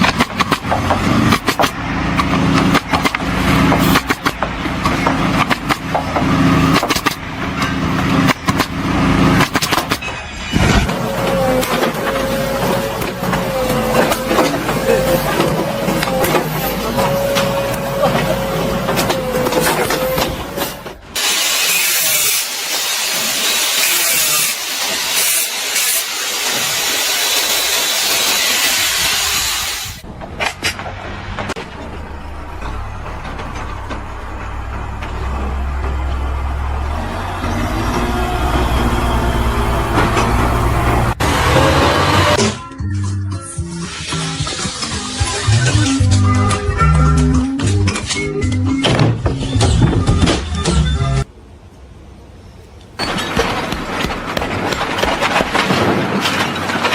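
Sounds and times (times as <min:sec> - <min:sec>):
sharp knocks and clatter: 0:00.0 - 0:11.0, 0:30.0 - 0:36.4, 0:53.0 - 0:56.9
engine running: 0:00.0 - 0:21.6, 0:26.4 - 0:42.5
steady loud hiss: 0:21.2 - 0:30.0.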